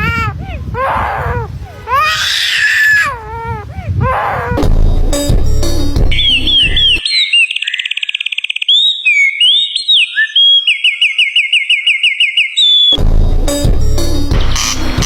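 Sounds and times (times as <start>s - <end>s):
bird singing whistled notes: 6.1s - 13.0s.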